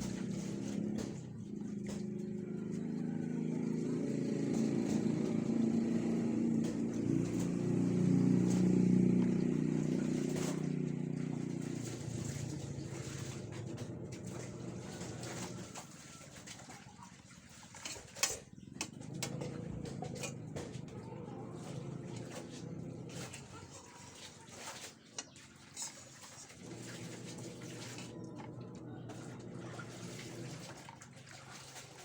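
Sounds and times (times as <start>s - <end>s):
vehicle engine passing by: 0.0s - 16.3s, 18.9s - 23.6s.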